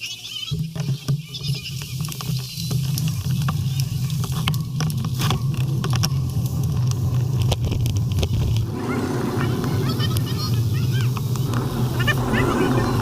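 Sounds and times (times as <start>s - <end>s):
small clicks and knocks: 0.8s - 8.7s
wind and road noise rumble: 2.8s - 13.0s.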